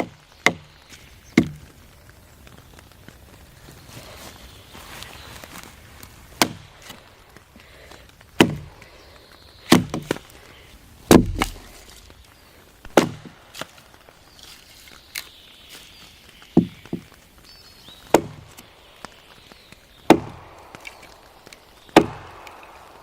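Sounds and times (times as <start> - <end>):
blade chopping wood: 0.0 - 0.8, 1.4 - 1.7, 6.4 - 7.0, 8.4 - 8.7, 9.7 - 10.2, 11.1 - 12.0, 12.9 - 13.7, 18.1 - 18.6, 20.1 - 23.0.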